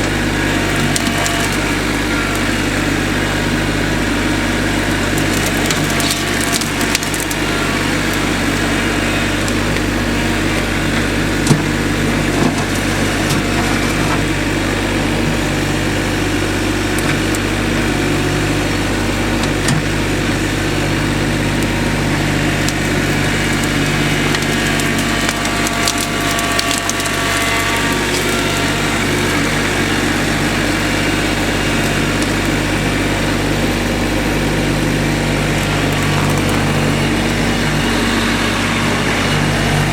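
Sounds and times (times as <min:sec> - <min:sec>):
engine running steadily: 0:00.0 - 0:39.9
wood knocks and cracks: 0:04.9 - 0:08.6, 0:22.6 - 0:32.8.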